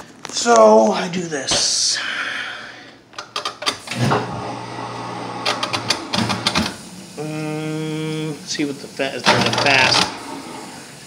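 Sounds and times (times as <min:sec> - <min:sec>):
dishwasher electric hum: 0:03.1 - 0:11.0
dishwasher control clicks: 0:09.3 - 0:10.1.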